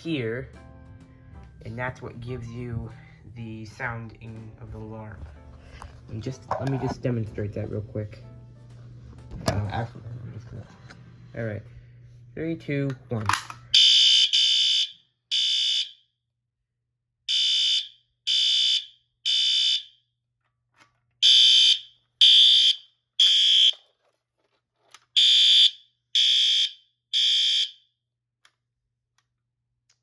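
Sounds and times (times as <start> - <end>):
fire alarm horn beeping: 13.7 - 16.0, 17.3 - 20.0, 21.2 - 23.8, 25.2 - 27.8.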